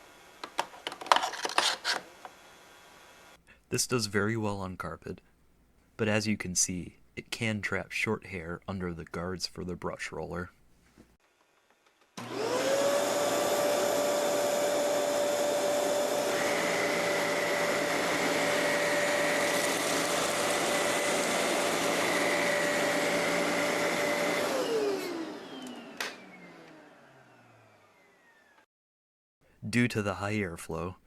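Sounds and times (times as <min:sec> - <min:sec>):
vacuum cleaner motor whine: 0:01.8 - 0:03.4, 0:11.4 - 0:28.7.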